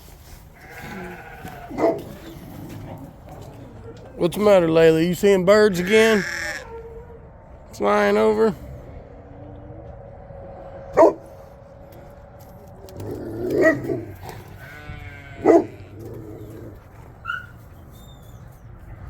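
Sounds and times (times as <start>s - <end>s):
dog barking: 1.7s - 2.2s, 10.9s - 11.3s, 13.5s - 14.2s, 15.4s - 15.8s, 17.2s - 17.6s.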